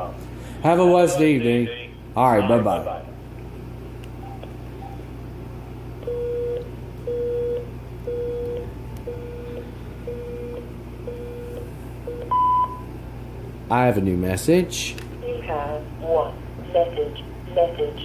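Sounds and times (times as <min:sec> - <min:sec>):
higher beep: 0:12.1 - 0:12.9.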